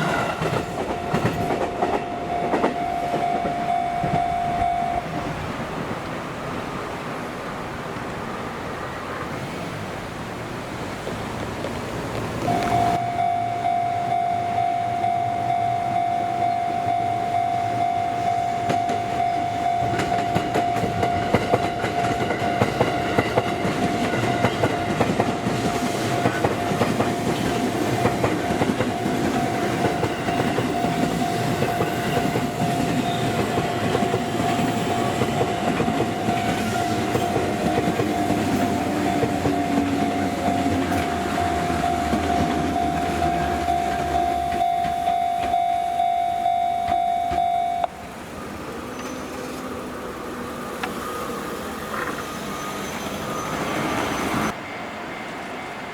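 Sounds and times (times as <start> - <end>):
wheels clacking over rail joints: 0.0 - 4.6, 18.2 - 45.7
level-crossing alarm tone: 0.0 - 5.2, 12.5 - 47.9
train rushing past: 0.0 - 55.9.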